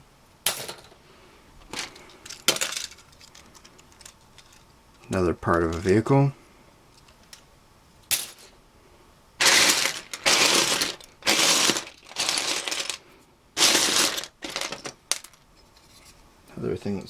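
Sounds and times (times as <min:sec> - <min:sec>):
plastic bricks clattering: 0:01.6 - 0:04.6, 0:09.4 - 0:13.0, 0:13.6 - 0:15.4.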